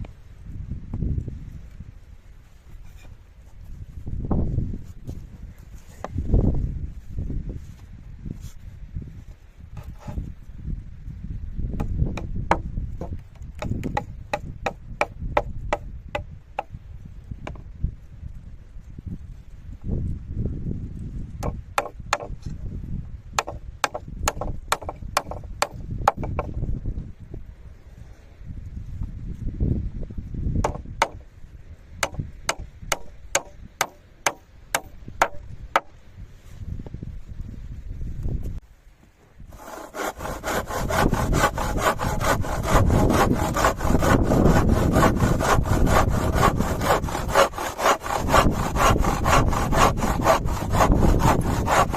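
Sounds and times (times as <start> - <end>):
wind buffeting microphone: 0.0 - 51.9.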